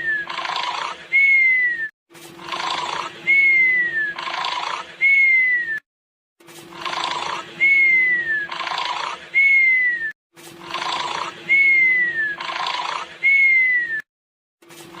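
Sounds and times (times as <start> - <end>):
cartoon snoring: 0.0 - 1.2, 2.4 - 5.0, 6.7 - 9.6, 10.6 - 13.5
falling whistle: 5.0 - 5.8, 13.2 - 14.0.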